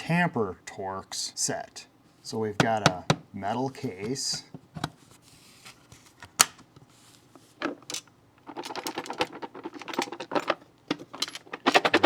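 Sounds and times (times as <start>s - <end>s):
metal case clicks and rattles: 7.6s - 12.0s.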